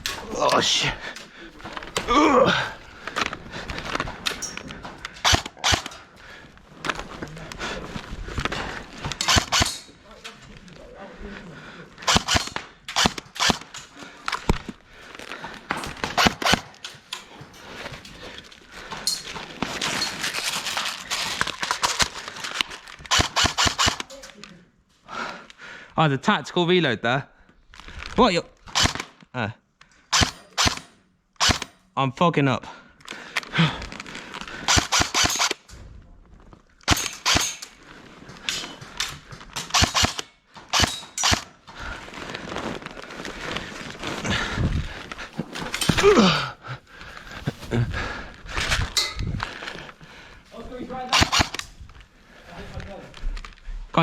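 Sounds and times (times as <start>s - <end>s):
airsoft gun shots: 5.2s - 5.9s, 9.2s - 9.8s, 12.1s - 13.6s, 23.1s - 24.1s, 28.7s - 29.1s, 30.1s - 31.7s, 34.7s - 35.6s, 36.9s - 37.6s, 39.7s - 41.5s, 51.1s - 51.6s.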